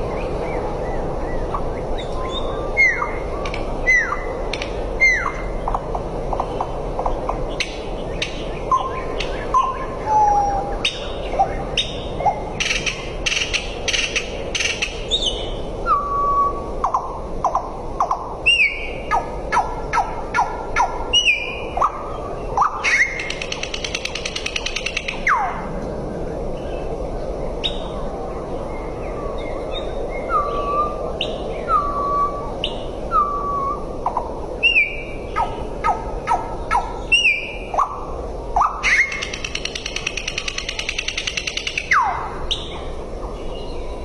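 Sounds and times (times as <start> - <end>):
background hiss: 0.0 - 44.0
bird chirping and whistling: 2.0 - 3.2, 3.8 - 4.4, 5.0 - 5.5, 7.6 - 17.1, 18.0 - 19.2, 20.4 - 22.0, 22.6 - 25.6, 29.8 - 38.0, 38.6 - 42.8
buzzy bird trill: 7.5 - 25.5.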